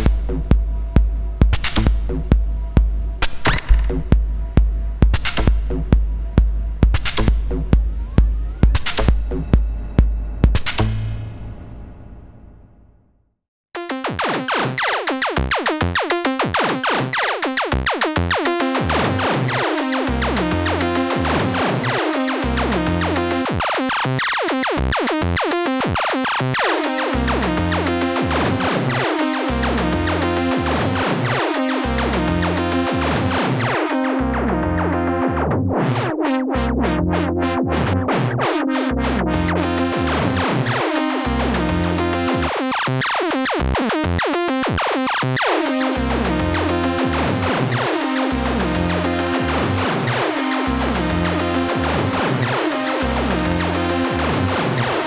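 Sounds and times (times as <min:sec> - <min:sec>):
pitched electronic percussion hits: 0:00.0 - 0:13.0, 0:45.4 - 0:55.0
deep bass hits: 0:00.0 - 0:13.2
fast sequenced synth notes: 0:03.8 - 0:10.9, 0:13.8 - 0:55.0
low sustained synth notes: 0:07.6 - 0:13.0, 0:45.8 - 0:55.0.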